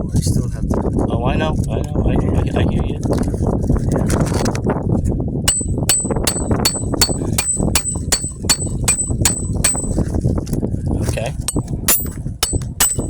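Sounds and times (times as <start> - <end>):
hammer striking metal tool: 5.5 - 10.0, 11.5 - 13.0.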